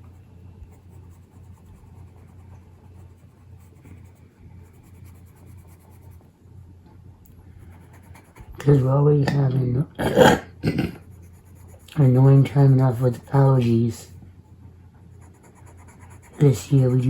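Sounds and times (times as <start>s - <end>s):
pencil scratching on paper: 0.0s - 6.2s, 7.6s - 9.4s, 11.0s - 13.8s, 15.1s - 17.0s
low steady hum: 0.0s - 17.0s.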